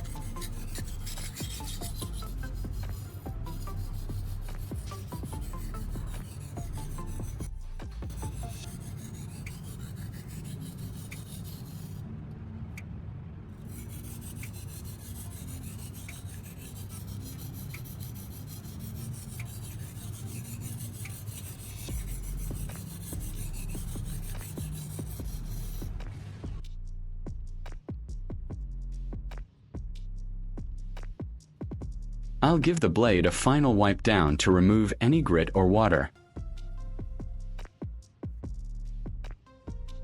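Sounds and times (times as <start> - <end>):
knife scraping on whetstone: 0.0 - 12.0, 13.6 - 26.0.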